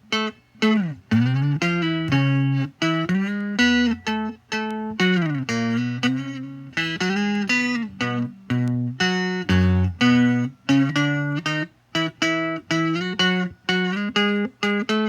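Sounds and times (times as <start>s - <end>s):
electric twelve-string guitar chords: 0.0s - 15.0s.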